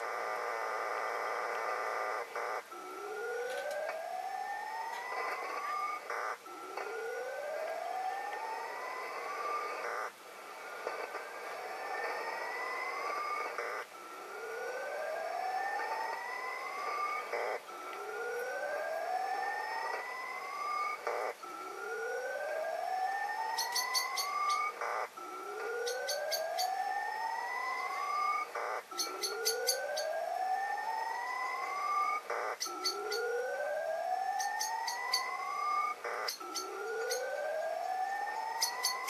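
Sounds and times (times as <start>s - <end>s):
receiver hiss: 0.0s - 7.1s, 7.7s - 14.8s, 23.3s - 30.4s
rising whistling tones: 18.0s - 39.0s
birds chirping: 23.4s - 27.0s, 27.9s - 30.2s, 31.6s - 39.0s.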